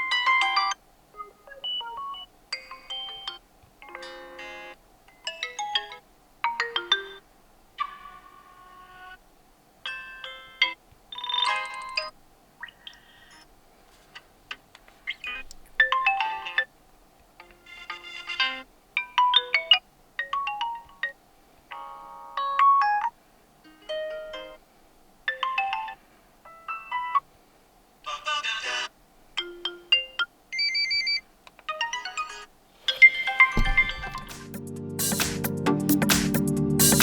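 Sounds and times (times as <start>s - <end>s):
smartphone melodic chimes: 0.1s - 7.2s, 9.9s - 13.4s.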